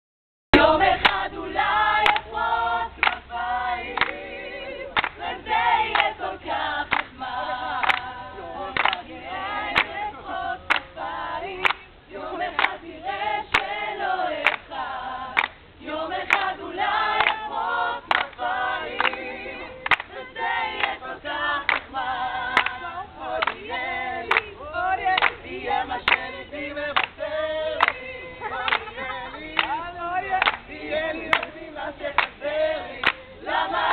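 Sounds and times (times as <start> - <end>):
group of voices singing: 0.5 - 33.9
hand claps: 2.0 - 2.3, 3.0 - 3.3, 4.0 - 4.2, 5.0 - 5.2, 5.9 - 6.1, 6.9 - 7.1, 7.8 - 8.1, 8.8 - 9.0, 10.7 - 10.9, 11.6 - 11.8, 12.6 - 12.8, 14.4 - 14.6, 15.4 - 15.6, 16.3 - 16.5, 17.2 - 17.4, 18.1 - 19.2, 19.8 - 20.2, 21.7 - 21.9, 22.6 - 22.8, 23.4 - 23.7, 25.2 - 25.4, 26.1 - 26.3, 27.0 - 27.2, 28.7 - 29.8, 30.4 - 30.6, 31.3 - 31.5, 32.2 - 32.4, 33.0 - 33.2.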